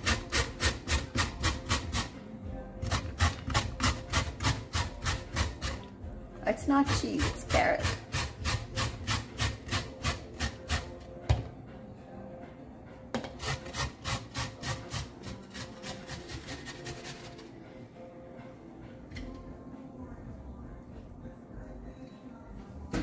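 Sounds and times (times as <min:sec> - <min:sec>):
carrot scraping on a grater: 0:00.0 - 0:02.2, 0:02.8 - 0:05.9, 0:06.8 - 0:11.0, 0:13.3 - 0:17.5.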